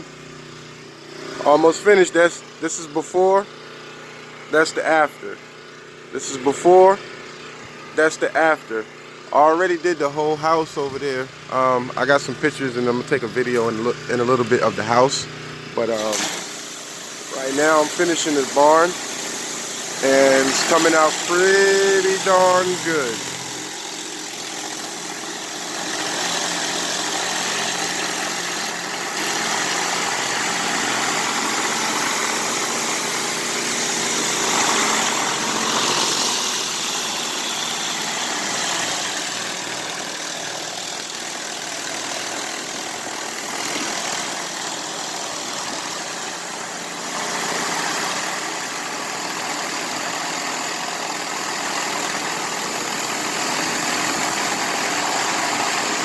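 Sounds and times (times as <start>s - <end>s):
pressure washer engine running: 0.0s - 56.0s
water jet hissing on wall: 15.9s - 39.8s.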